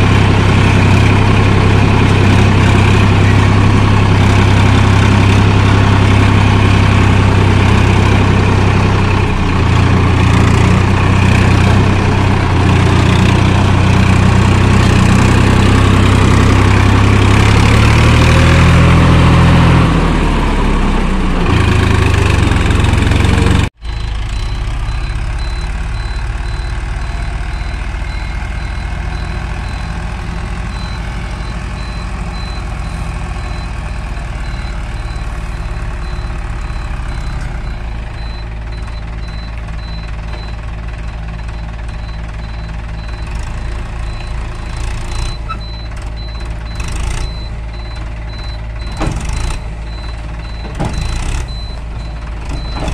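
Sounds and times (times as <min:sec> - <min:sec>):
heavy diesel engines running: 0:00.0 - 0:52.9
quieter engine running: 0:00.0 - 0:52.9
rapid high-pitched reversing beep: 0:23.8 - 0:44.4.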